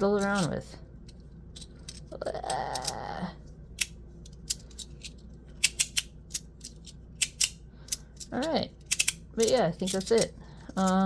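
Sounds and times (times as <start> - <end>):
sharp magnetic clicks: 5.6 - 11.0.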